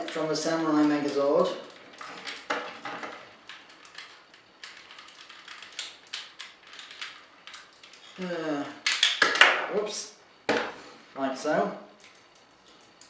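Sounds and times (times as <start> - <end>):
plastic toy parts clicking: 1.4 - 8.2, 8.8 - 9.5.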